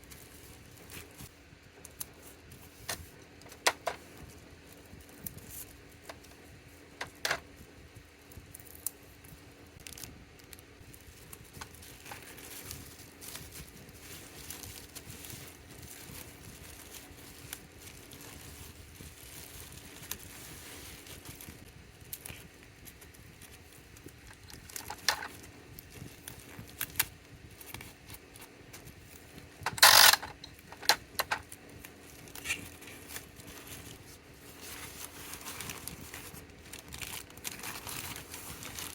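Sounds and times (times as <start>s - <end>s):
plastic packaging rustling: 0.0s - 7.6s, 8.4s - 38.9s
faint steady hum: 0.0s - 38.9s
loud crackle or rip: 9.7s - 38.9s.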